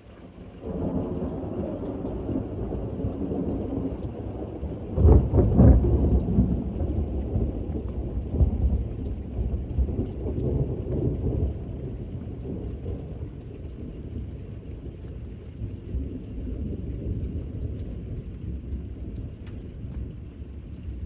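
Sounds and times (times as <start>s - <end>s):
steady rain: 0.0s - 21.0s
thunder rumbling: 0.6s - 21.0s.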